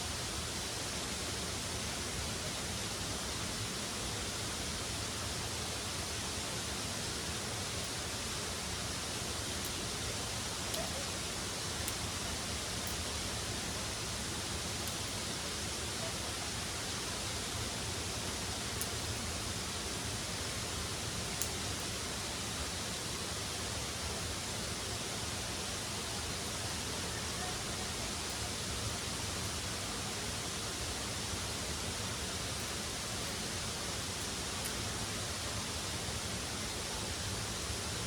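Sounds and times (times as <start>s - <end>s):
faint high ticks: 9.6s - 9.8s, 10.7s - 11.0s, 11.8s - 12.1s, 12.8s - 13.1s, 14.8s - 15.3s, 18.7s - 19.2s, 21.3s - 22.0s, 34.1s - 34.9s.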